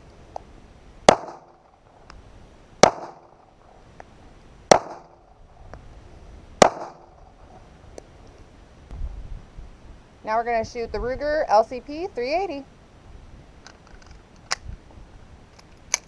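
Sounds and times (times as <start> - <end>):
pistol shots with echo: 1.1 - 1.8, 2.8 - 3.4, 4.7 - 5.3, 6.6 - 7.2.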